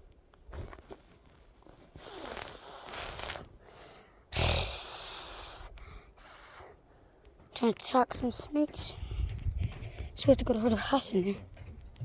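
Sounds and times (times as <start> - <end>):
wind puffs on microphone: 8.8 - 10.7.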